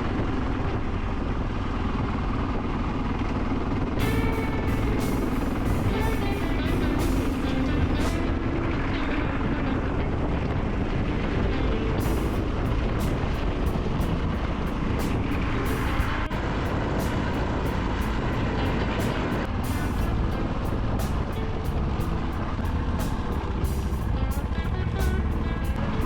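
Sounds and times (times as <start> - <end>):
motorcycle engine running: 0.0 - 26.0
rushing noise: 3.4 - 26.0.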